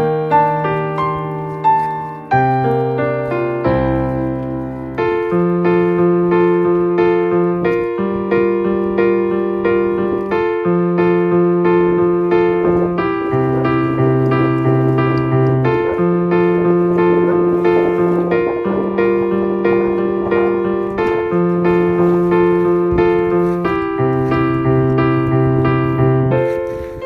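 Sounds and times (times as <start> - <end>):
slow gentle piano melody: 0.0 - 27.0.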